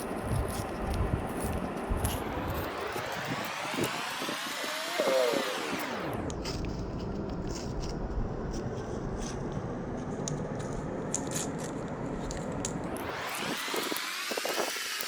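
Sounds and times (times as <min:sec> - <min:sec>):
wrappers crackling and scraping: 0:00.0 - 0:04.8
crisp clicks: 0:10.2 - 0:15.0.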